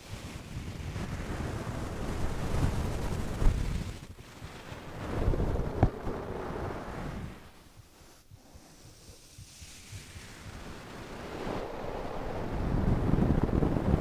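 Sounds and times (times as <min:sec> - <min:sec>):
person breathing slowly: 0:07.9 - 0:10.1.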